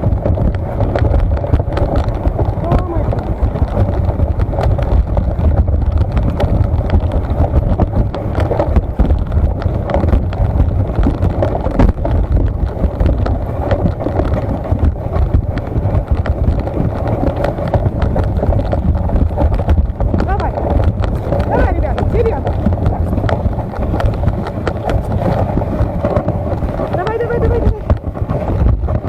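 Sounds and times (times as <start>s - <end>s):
small clicks and knocks: 0.0s - 29.0s
wind buffeting microphone: 0.0s - 29.0s.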